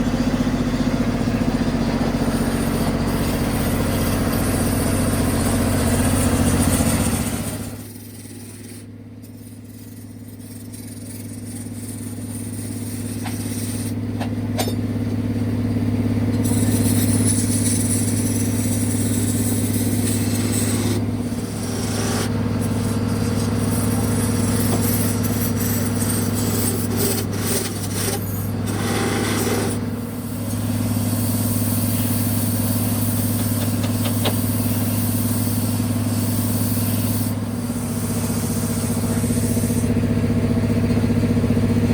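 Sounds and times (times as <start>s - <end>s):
machine motor humming: 19.0s - 41.9s.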